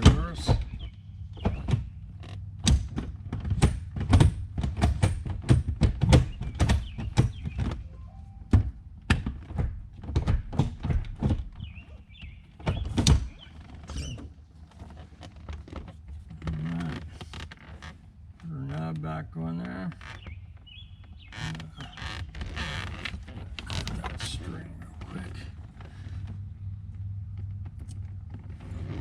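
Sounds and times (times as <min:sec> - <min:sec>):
gear shifter knocks and clunks: 0:00.0 - 0:16.5.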